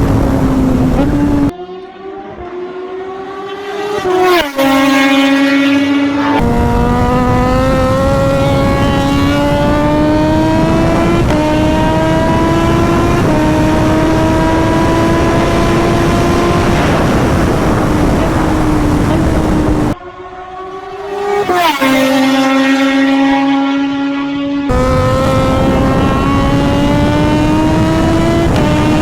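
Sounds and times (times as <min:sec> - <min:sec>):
wind rush: 0:00.0 - 0:01.5, 0:06.3 - 0:20.1, 0:24.7 - 0:29.0
motorcycle engine accelerating: 0:00.0 - 0:29.0.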